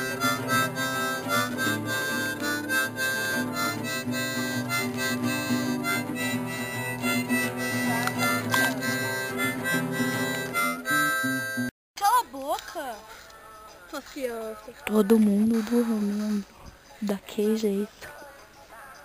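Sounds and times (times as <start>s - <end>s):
instrumental music with held chords: 0.0s - 11.7s.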